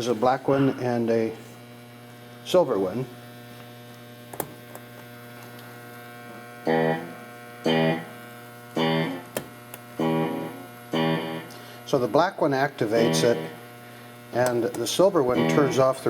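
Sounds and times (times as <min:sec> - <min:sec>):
mains hum: 0:00.0 - 0:16.0
echoing guitar note: 0:06.7 - 0:08.1, 0:08.8 - 0:09.2, 0:10.0 - 0:11.6, 0:13.0 - 0:13.6, 0:15.3 - 0:16.0.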